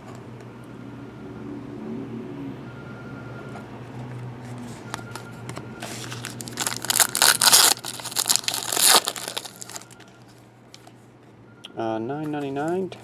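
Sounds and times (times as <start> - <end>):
plastic wrapper crinkling: 5.8 - 10.1.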